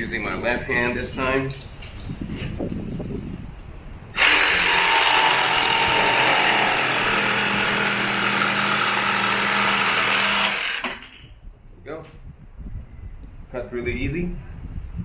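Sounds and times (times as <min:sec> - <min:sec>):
jigsaw cutting plywood: 0:04.2 - 0:11.2.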